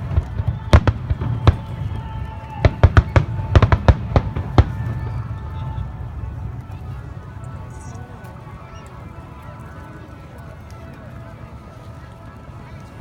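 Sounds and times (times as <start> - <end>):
fireworks bursting with sharp bangs: 0.0 - 6.6
low rumble: 0.0 - 8.2.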